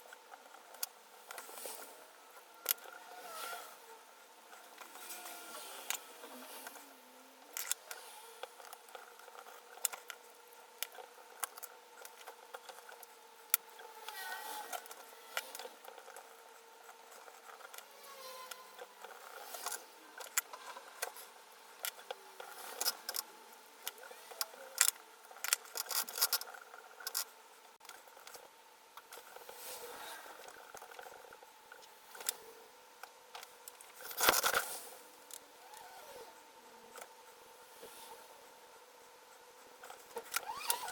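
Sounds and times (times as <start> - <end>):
faint steady hum: 0.0 - 40.9
tool clicks and scrapes: 10.8 - 27.3.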